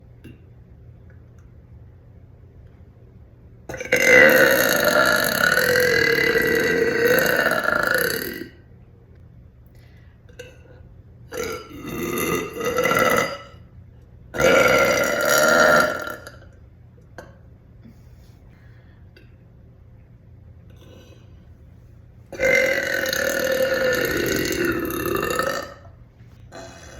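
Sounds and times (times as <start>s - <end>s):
woman burping: 3.7s - 8.6s, 11.3s - 13.6s, 14.4s - 16.5s, 22.4s - 26.9s.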